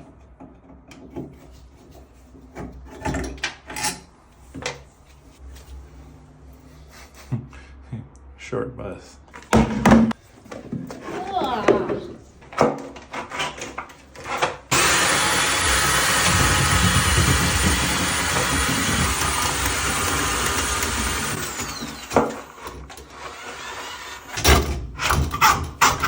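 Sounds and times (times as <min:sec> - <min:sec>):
power tool motor whining: 0:14.7 - 0:24.5.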